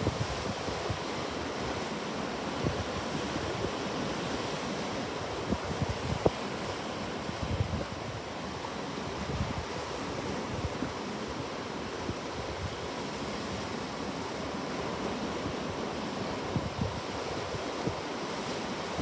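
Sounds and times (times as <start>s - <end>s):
ocean waves washing on shore: 0.0s - 19.0s.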